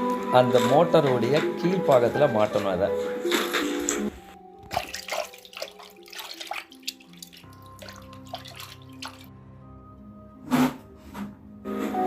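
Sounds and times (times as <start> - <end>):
soft background music: 0.0 - 12.0.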